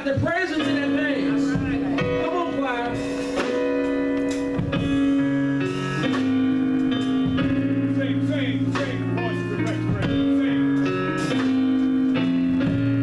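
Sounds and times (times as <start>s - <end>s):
bass line: 0.0s - 13.0s
instrumental gospel music: 0.0s - 13.0s
plucked guitar notes: 0.6s - 13.0s.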